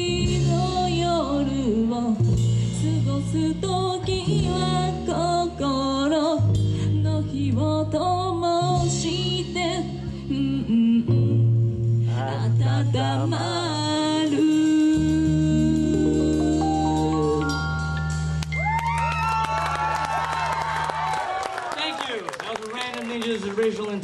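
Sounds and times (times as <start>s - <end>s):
live rock band: 0.0s - 7.2s, 11.1s - 21.2s
lead singer singing: 12.1s - 17.7s.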